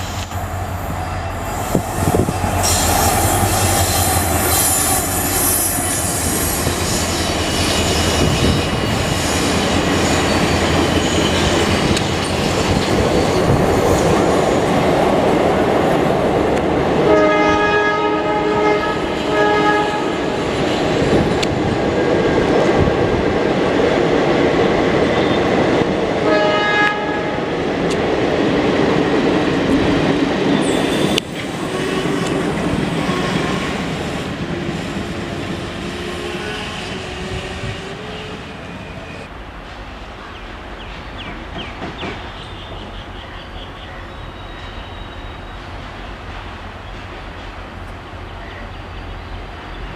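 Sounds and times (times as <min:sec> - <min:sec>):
train horn blasts: 0:17.0 - 0:20.2, 0:26.2 - 0:27.4, 0:30.6 - 0:33.7.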